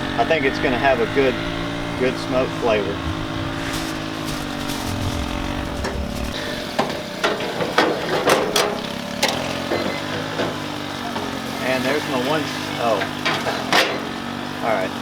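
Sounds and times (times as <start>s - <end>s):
mechanical hum: 0.0s - 15.0s
metal clicks and clattering knocks: 3.2s - 11.6s.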